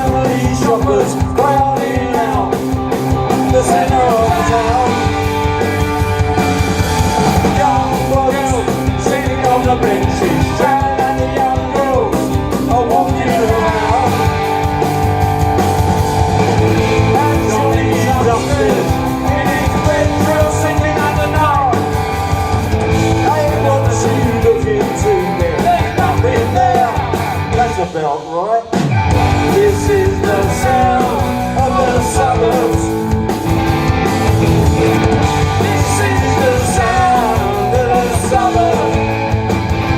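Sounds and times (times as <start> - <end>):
bending electric guitar lines: 0.0 - 27.8, 28.8 - 39.9
punk rock band playing: 0.0 - 39.9.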